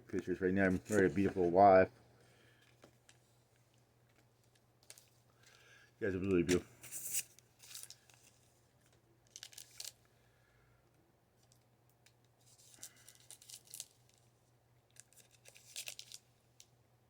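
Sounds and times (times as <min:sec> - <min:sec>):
trading cards and wrapper rustling: 0:00.2 - 0:01.9, 0:04.4 - 0:08.5, 0:09.3 - 0:10.0, 0:12.4 - 0:14.2, 0:14.9 - 0:16.3.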